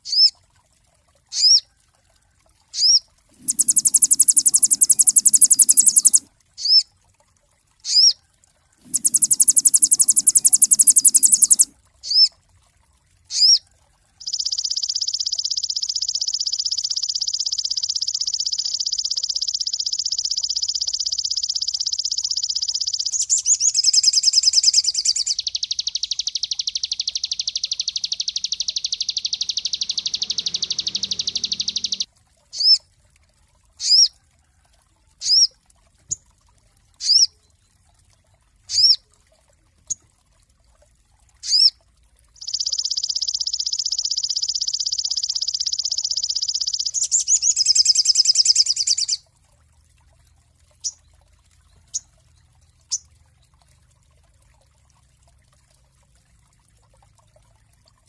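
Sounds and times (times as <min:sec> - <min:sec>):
songbird trilling and chirping: 0:02.8 - 0:06.8, 0:08.8 - 0:12.3, 0:14.2 - 0:32.8, 0:42.4 - 0:49.2.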